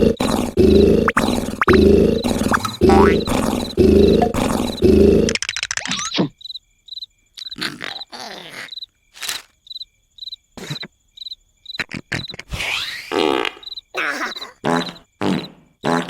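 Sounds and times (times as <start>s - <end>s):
cartoon snoring: 0.0s - 5.4s, 12.1s - 16.0s
cricket-like chirp: 0.0s - 16.0s
squeaky cartoon effects: 1.1s - 6.3s, 11.8s - 16.0s.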